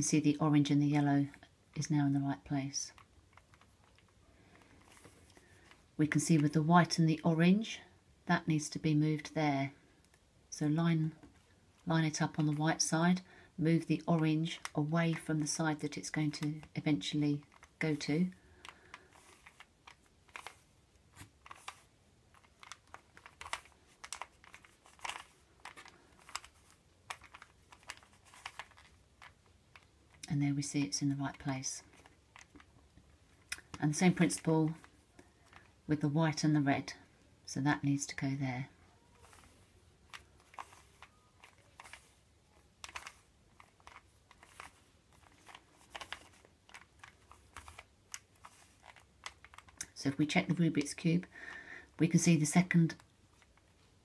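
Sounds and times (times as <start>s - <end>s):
plastic puzzle cube clicking: 1.3s - 6.6s, 13.8s - 36.4s, 39.2s - 51.6s.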